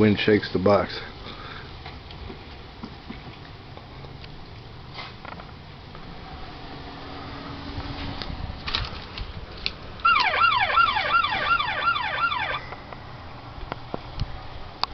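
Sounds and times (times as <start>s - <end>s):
toy police car siren warbling: 10.1s - 12.7s.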